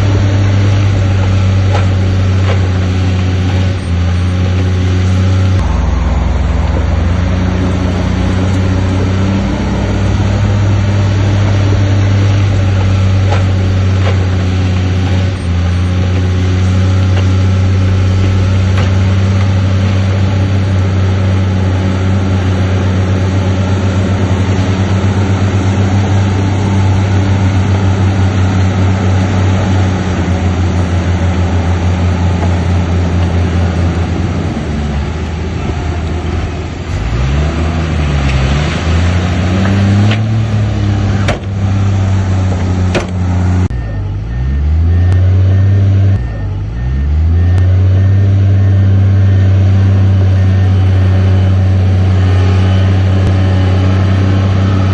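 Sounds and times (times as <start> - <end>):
diesel machinery engine running: 0.0 - 54.9
faint repeated beep: 43.7 - 54.9.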